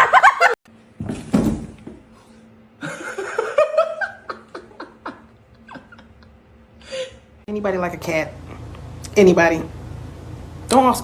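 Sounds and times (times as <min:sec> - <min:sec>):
person laughing: 0:00.0 - 0:00.6, 0:02.8 - 0:07.2.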